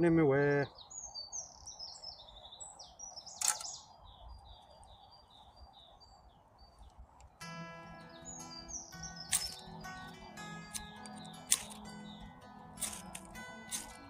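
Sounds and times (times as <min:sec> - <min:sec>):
birds chirping: 0:00.0 - 0:14.0
sharp click: 0:03.4 - 0:03.8, 0:09.2 - 0:09.7, 0:10.6 - 0:14.0.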